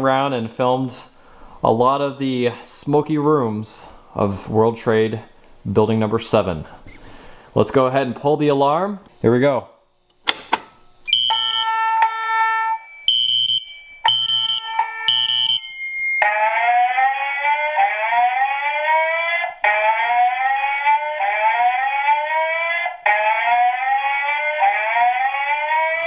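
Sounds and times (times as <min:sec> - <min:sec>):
sharp click: 0:10.2 - 0:10.7
fire alarm tone pulses: 0:11.0 - 0:26.0
fire alarm rising whoop: 0:11.1 - 0:26.0.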